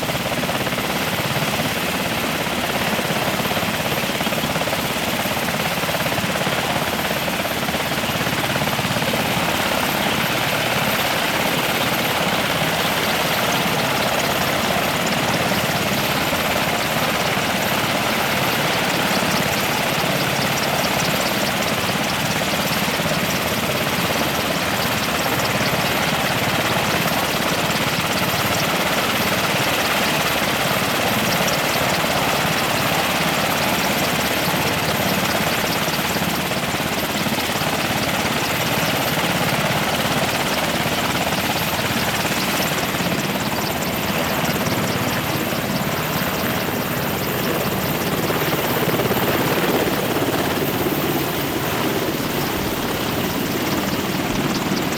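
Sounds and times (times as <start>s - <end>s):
helicopter engines and rotor: 0.0s - 54.9s.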